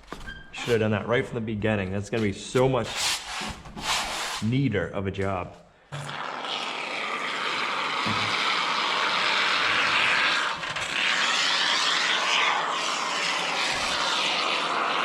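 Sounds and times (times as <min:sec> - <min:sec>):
aerosol spray can hissing: 0:06.0 - 0:15.0.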